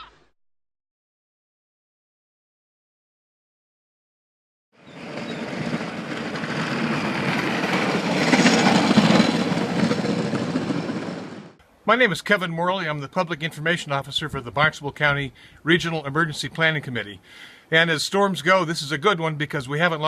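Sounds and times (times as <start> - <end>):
vehicle passing by: 4.8 - 11.6.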